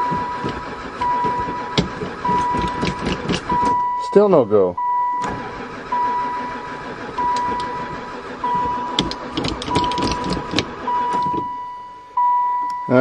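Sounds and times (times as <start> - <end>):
rough mechanical noise: 0.0 - 3.8, 5.2 - 11.6
vehicle warning chime beeping: 0.0 - 13.0.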